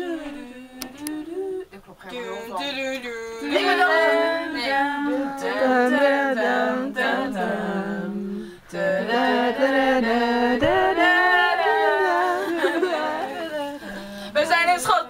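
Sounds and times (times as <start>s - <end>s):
voices singing unaccompanied: 0.0s - 15.0s.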